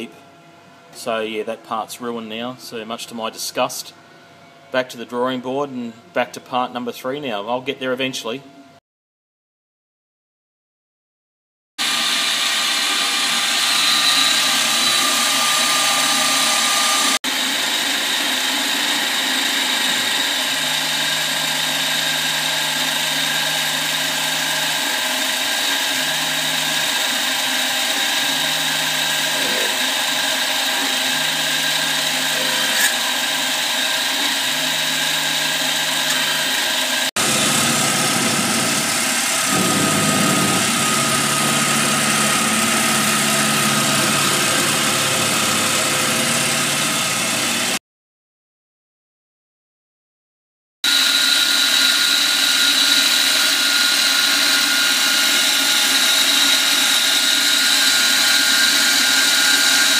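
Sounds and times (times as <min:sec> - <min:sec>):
milling machine cutting metal: 0:11.8 - 0:47.8, 0:50.9 - 0:59.9
low hum: 0:37.2 - 0:46.0.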